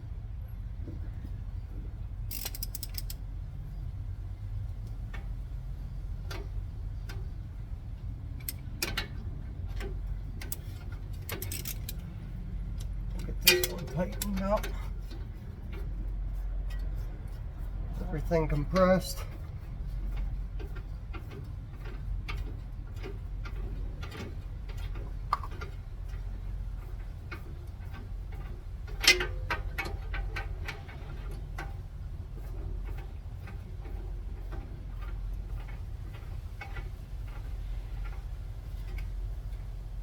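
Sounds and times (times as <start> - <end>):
ratchet wrench clicking: 2.3 - 3.2, 8.4 - 19.4.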